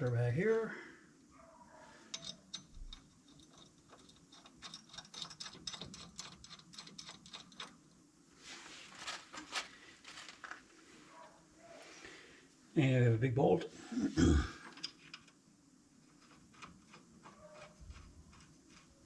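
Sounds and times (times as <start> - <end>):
hand tools clicking on metal: 2.1 - 7.9.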